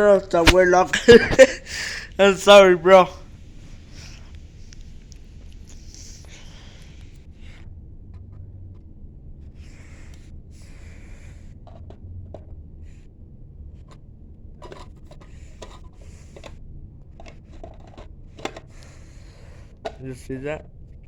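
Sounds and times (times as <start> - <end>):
low steady hum: 0.0 - 21.0
rubbing and scraping: 0.4 - 2.6.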